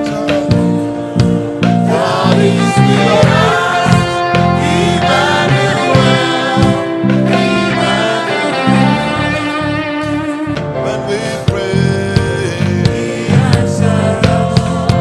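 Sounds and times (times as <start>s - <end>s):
gospel band playing: 0.0s - 15.0s.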